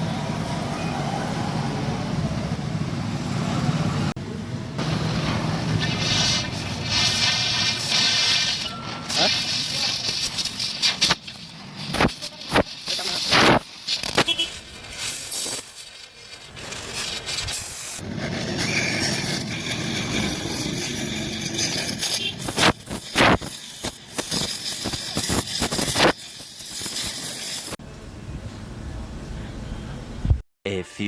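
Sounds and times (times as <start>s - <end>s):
scraping: 4.8s - 27.8s
welding torch hissing: 4.8s - 27.8s.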